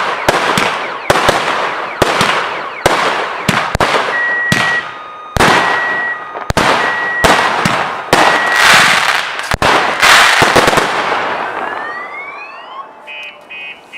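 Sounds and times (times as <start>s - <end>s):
firework crackling: 0.0s - 11.9s
firework reports: 0.0s - 13.9s
firework whistle: 0.2s - 9.2s.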